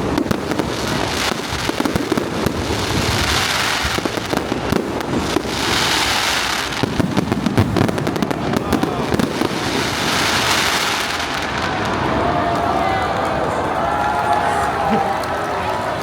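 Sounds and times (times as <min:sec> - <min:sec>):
fireworks pops and bangs: 0:00.0 - 0:13.3.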